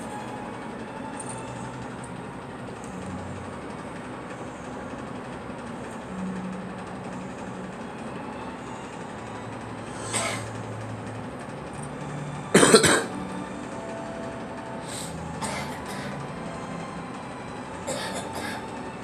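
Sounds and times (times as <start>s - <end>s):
girl coughing: 10.1s - 10.4s, 12.6s - 13.2s, 15.4s - 16.1s, 17.9s - 18.6s.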